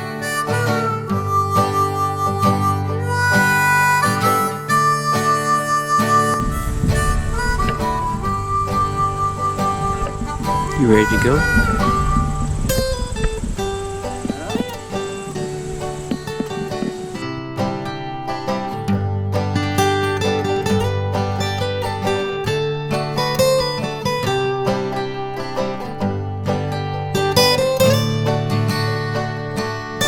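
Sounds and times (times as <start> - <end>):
harmonica melody: 0.0 - 30.0
plucked acoustic guitar: 0.0 - 30.0
bass line: 6.4 - 16.8.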